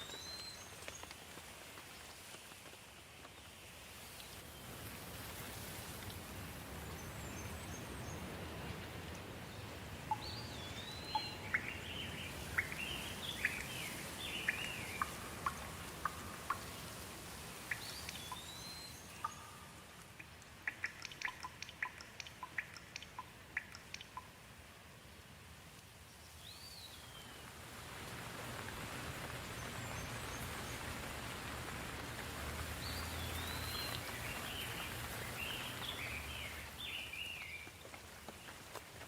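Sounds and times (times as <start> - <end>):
songbird singing: 0.0 - 1.2, 6.5 - 24.5, 26.0 - 27.6, 32.2 - 38.6
steady rain falling: 0.0 - 39.0
sharp water drips: 4.0 - 24.9, 25.7 - 39.0.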